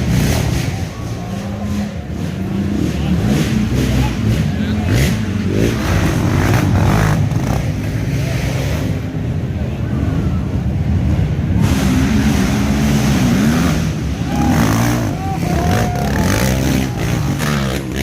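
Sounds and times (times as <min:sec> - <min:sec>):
atv engines revving: 0:00.0 - 0:18.0.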